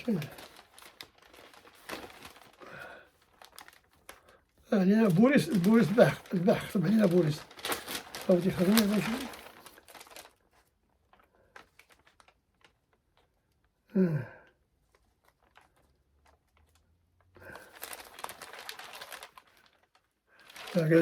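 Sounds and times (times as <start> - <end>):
person murmuring: 0.0 - 0.5, 4.7 - 7.5, 8.1 - 9.5, 20.7 - 21.0
faint rustling: 17.5 - 21.0.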